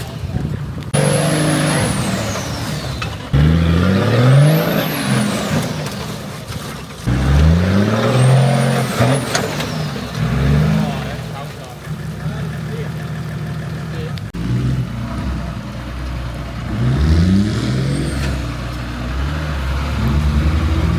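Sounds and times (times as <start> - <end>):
engine revving hard: 0.9 - 6.4, 7.0 - 11.5, 14.3 - 20.9.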